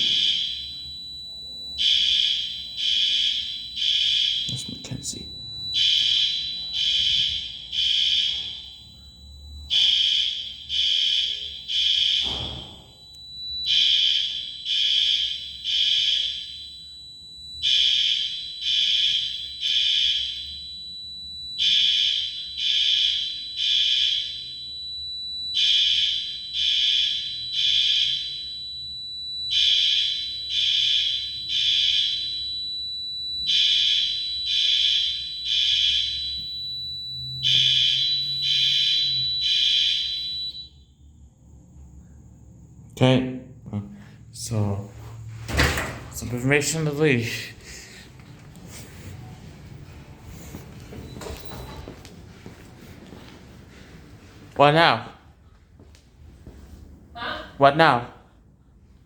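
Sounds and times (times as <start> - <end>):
fire alarm beeps: 0.0 - 42.7, 44.0 - 59.0.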